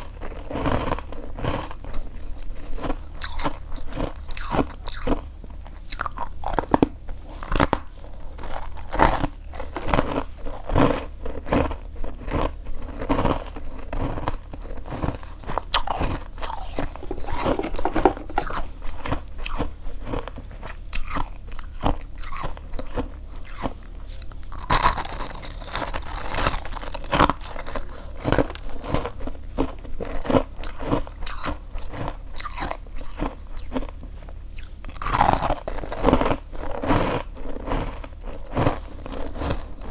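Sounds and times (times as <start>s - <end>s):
chewing frost crunches: 15.2s - 18.6s.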